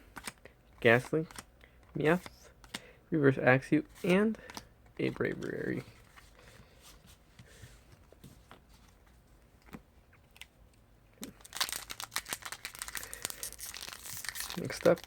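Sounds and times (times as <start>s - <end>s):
foil wrapper crinkling and tearing: 11.3s - 15.0s.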